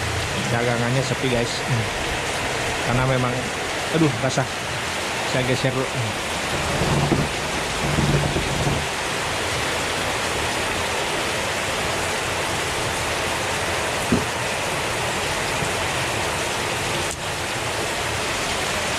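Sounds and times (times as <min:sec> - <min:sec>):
heavy rain pouring: 0:00.0 - 0:18.9
low thump: 0:06.5 - 0:08.9.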